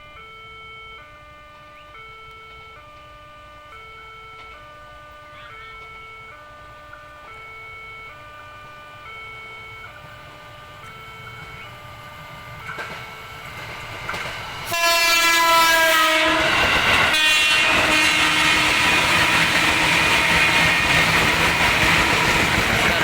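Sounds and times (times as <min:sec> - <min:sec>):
train wheels rumbling on rails: 0:09.4 - 0:23.0
train horn: 0:14.6 - 0:23.0.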